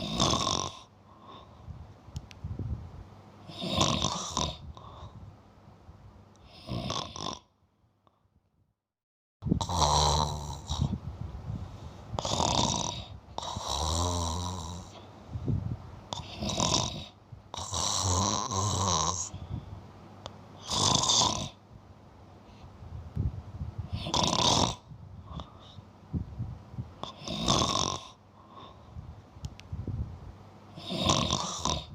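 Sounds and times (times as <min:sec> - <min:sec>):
cat snoring: 0:00.0 - 0:00.9, 0:03.5 - 0:05.1, 0:06.4 - 0:07.5, 0:09.6 - 0:11.0, 0:12.2 - 0:15.0, 0:16.1 - 0:19.4, 0:20.6 - 0:21.6, 0:23.9 - 0:25.8, 0:27.0 - 0:28.8, 0:30.7 - 0:31.9.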